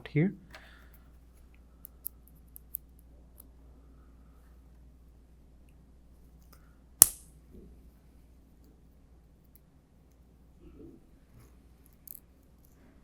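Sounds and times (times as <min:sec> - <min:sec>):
sharp click: 0:07.0 - 0:07.3.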